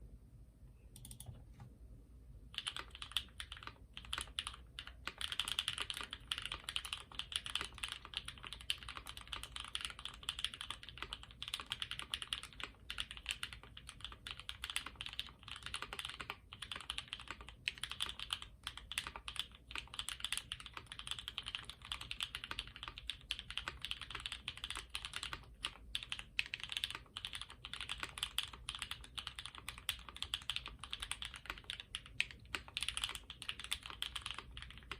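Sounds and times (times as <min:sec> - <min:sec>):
mechanical keyboard typing: 0:01.0 - 0:01.4, 0:02.5 - 0:34.9.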